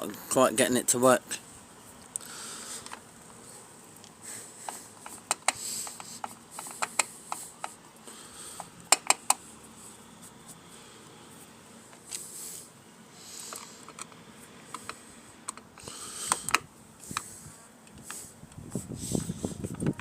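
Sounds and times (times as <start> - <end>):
clicks and taps of tools and parts: 4.0 - 7.8, 8.6 - 9.4, 13.5 - 18.2.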